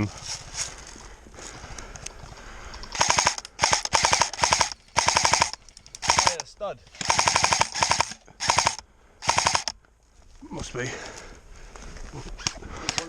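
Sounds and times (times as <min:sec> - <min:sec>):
airsoft rifle full-auto bursts: 0:02.8 - 0:09.8, 0:12.4 - 0:13.0.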